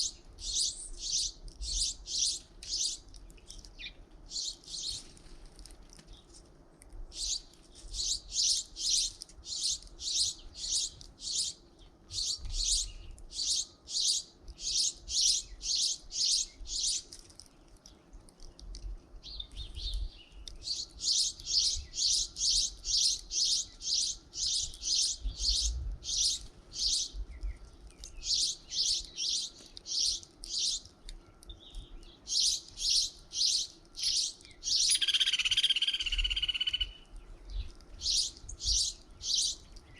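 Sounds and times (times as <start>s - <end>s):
small songbirds chirping: 0.0s - 39.9s.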